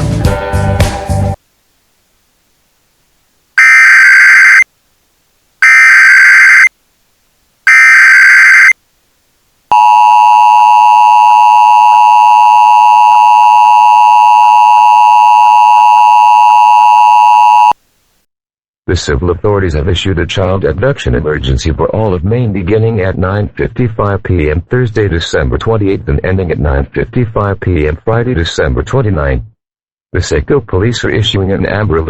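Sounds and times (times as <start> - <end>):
digital data bursts: 3.6 - 4.6
two-tone attention signal: 3.6 - 4.6, 5.6 - 6.7, 7.7 - 8.7.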